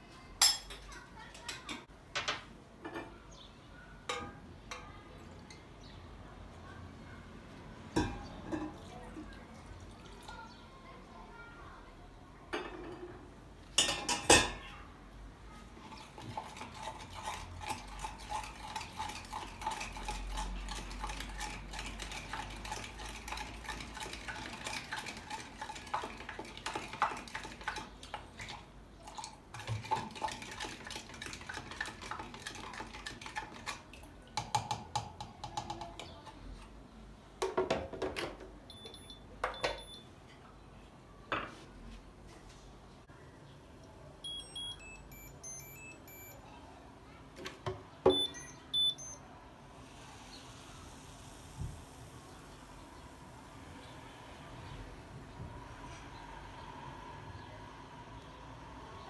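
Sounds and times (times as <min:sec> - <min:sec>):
dishes and cutlery clinking: 0:00.4 - 0:03.2, 0:08.0 - 0:08.9, 0:12.5 - 0:13.2, 0:13.8 - 0:14.7
dishes clattering: 0:00.4 - 0:03.2, 0:08.0 - 0:08.9, 0:12.6 - 0:13.2, 0:13.8 - 0:14.7.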